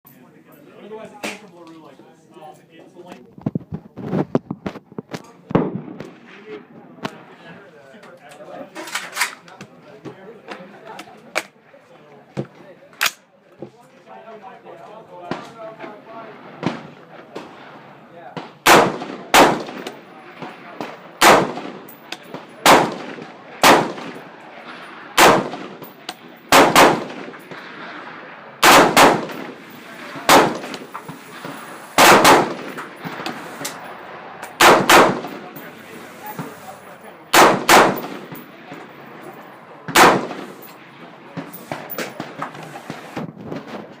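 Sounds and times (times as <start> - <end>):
rifle shots with echo: 5.5 - 7.4, 15.2 - 36.7, 37.3 - 43.9.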